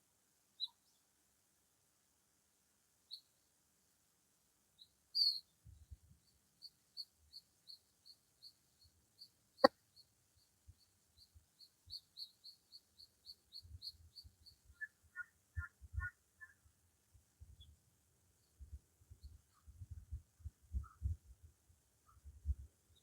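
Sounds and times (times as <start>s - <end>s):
bird chirping: 0.6s - 1.0s, 4.8s - 16.7s
lower bird calls: 10.8s - 16.6s.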